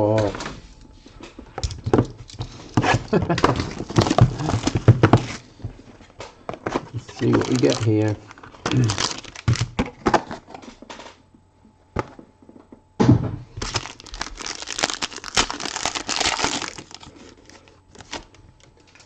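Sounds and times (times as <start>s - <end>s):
packaging ripping and crinkling: 2.7s - 5.4s, 6.9s - 10.3s, 13.6s - 19.0s.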